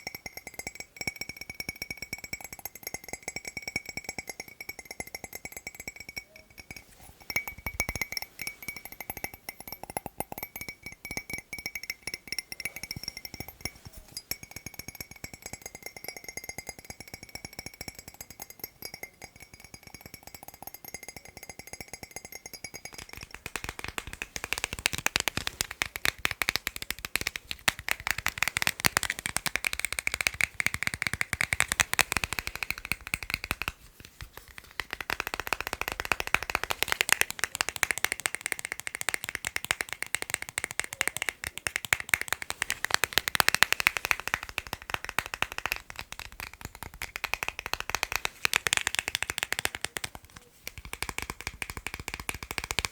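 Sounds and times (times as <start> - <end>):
ringing tone of tapped object: 0.0 - 23.7
fast tapping on hard objects: 0.0 - 52.9.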